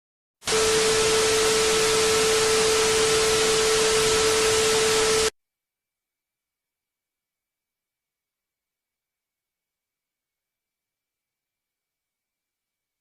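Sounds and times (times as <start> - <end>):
loud static hiss: 0.5 - 5.3
steady mid-pitched tone: 0.5 - 5.3.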